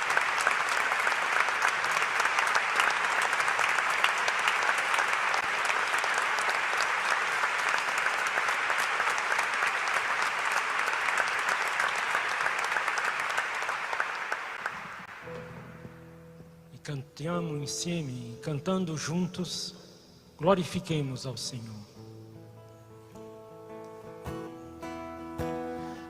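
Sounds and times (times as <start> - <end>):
large crowd applauding: 0.0 - 15.4.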